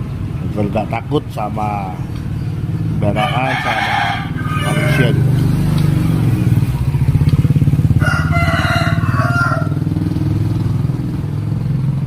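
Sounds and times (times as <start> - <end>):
rooster crowing: 3.1 - 5.4, 7.9 - 9.9.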